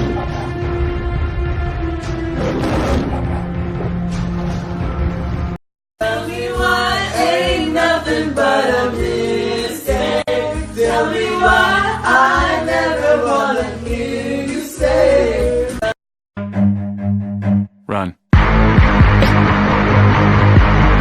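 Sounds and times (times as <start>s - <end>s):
several voices singing together: 6.0s - 16.0s.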